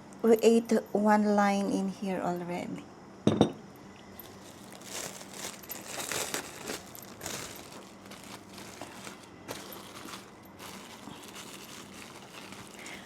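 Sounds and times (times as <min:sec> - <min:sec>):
crinkly wrapping rustling: 0:04.1 - 0:13.0.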